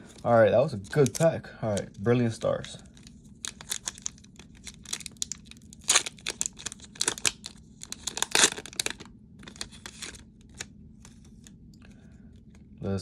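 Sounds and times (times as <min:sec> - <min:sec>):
foil wrapper tearing and crinkling: 0:00.2 - 0:01.8, 0:02.9 - 0:10.7.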